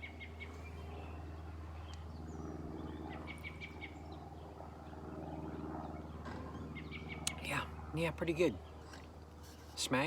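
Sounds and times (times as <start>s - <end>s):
bird chirping: 0.0s - 7.4s
steady low hum: 0.0s - 10.0s.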